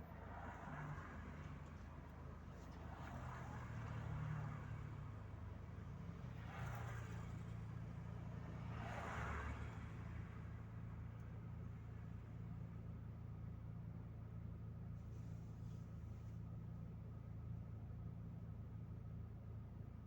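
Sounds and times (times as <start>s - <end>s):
road noise: 0.0s - 12.6s.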